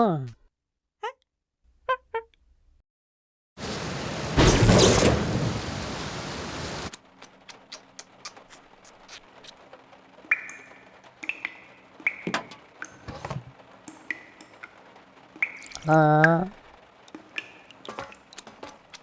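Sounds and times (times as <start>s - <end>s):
rushing hiss: 3.6s - 6.9s
short high squeaks: 3.6s - 6.9s.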